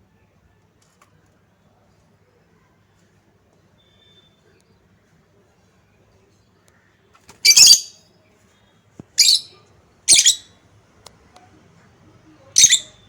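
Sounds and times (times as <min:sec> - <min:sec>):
bird squawking shrilly: 0:07.5 - 0:07.9, 0:10.1 - 0:10.4, 0:12.6 - 0:12.9.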